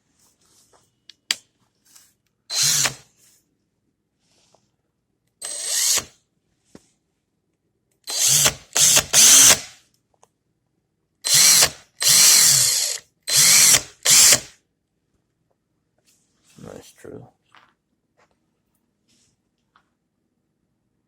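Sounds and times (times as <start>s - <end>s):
cordless drill motor whining: 2.5s - 3.0s, 5.4s - 6.1s, 8.1s - 9.7s, 11.3s - 14.5s.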